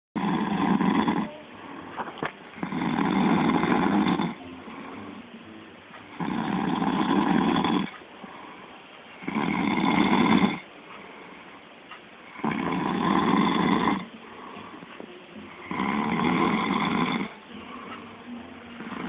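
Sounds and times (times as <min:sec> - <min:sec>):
man snoring: 0:00.2 - 0:01.3, 0:02.6 - 0:05.0, 0:06.1 - 0:07.9, 0:09.2 - 0:10.6, 0:12.3 - 0:14.8, 0:15.6 - 0:17.4.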